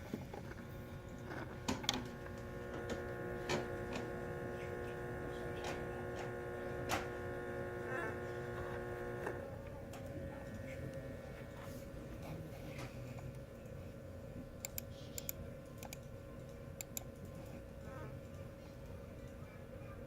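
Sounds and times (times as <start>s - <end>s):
electrical interference buzzing: 0.0s - 12.3s
sharp electrical clicks: 1.0s - 7.8s, 14.6s - 16.0s, 16.8s - 17.2s.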